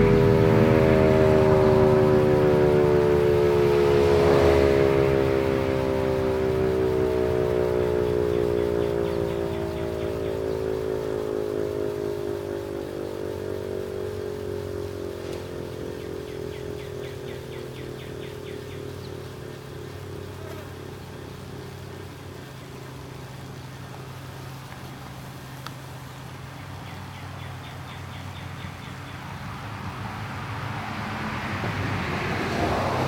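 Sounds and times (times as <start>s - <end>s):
electric motor siren winding down: 0.0s - 27.1s.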